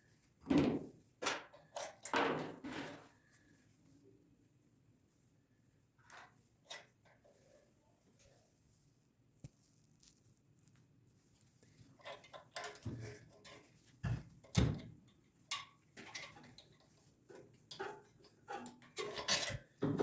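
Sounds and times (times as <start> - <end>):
hand tools and metal parts clicking: 12.0 - 13.7, 14.4 - 20.0.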